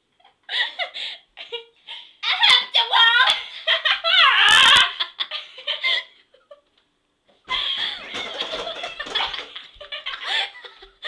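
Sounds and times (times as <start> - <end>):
girls laughing and giggling: 3.3 - 6.6, 7.5 - 11.0.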